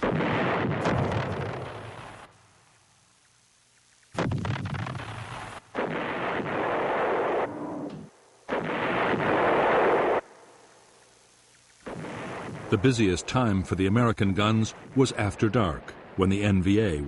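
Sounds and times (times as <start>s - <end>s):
artillery firing: 0.0s - 2.3s, 4.2s - 10.3s, 11.8s - 16.2s.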